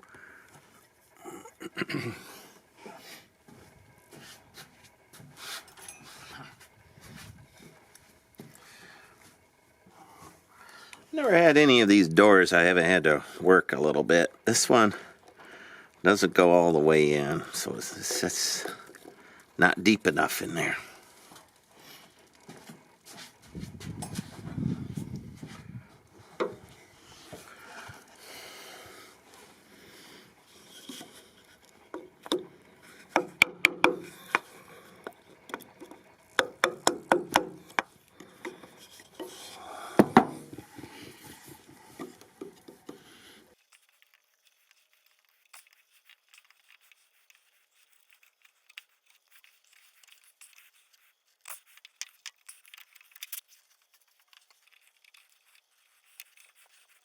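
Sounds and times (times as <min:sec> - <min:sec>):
chisel scraping and tapping wood: 0:30.6 - 0:43.1.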